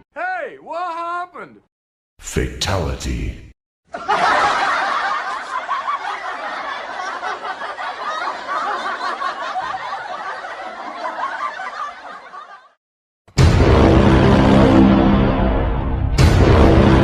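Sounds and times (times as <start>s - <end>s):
people laughing and snickering: 3.9s - 12.8s.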